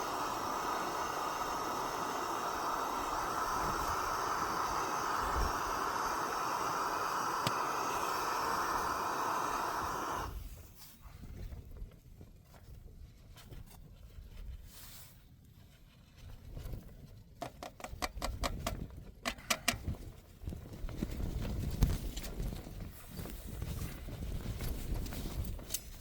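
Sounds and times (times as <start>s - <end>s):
blizzard wind buffeting: 0.0s - 11.6s.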